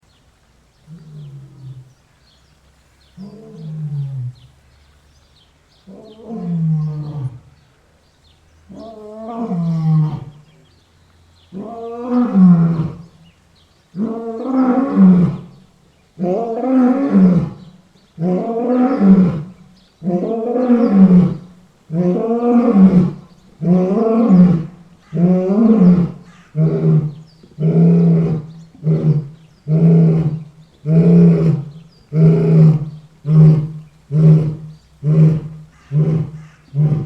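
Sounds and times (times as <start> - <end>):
lion roaring: 3.2 - 4.4, 16.2 - 37.0.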